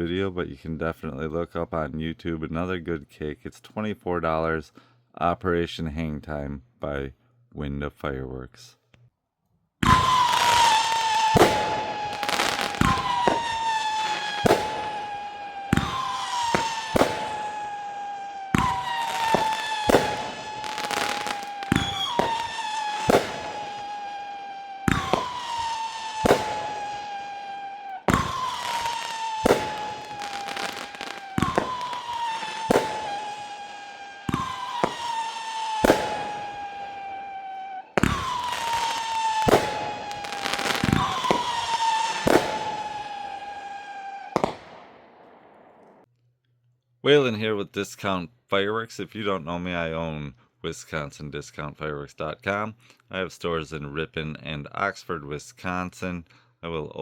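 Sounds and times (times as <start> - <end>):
firework cracking: 9.8 - 46.1
firework shots whistling: 9.8 - 46.1.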